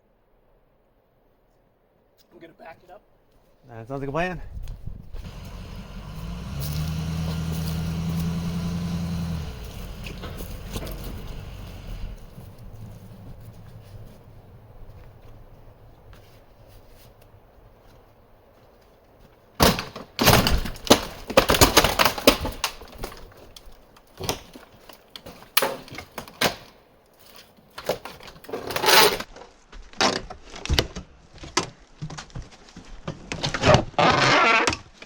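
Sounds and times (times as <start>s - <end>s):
scraping and ripping: 5.2s - 14.3s
wood and debris knocking and crashing: 5.2s - 15.3s, 19.6s - 26.6s.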